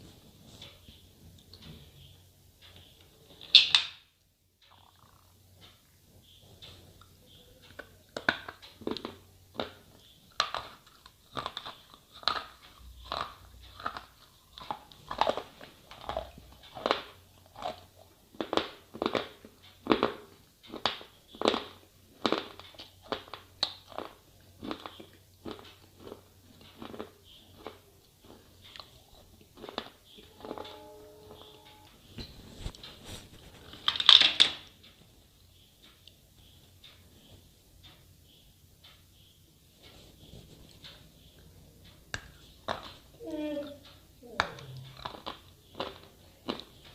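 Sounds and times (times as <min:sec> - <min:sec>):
brittle crunching of chewing: 0:07.7 - 0:31.5, 0:44.4 - 0:46.9.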